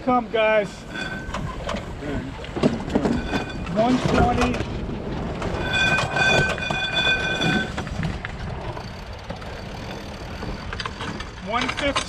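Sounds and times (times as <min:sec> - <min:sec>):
wind noise on microphone: 0:00.8 - 0:10.9.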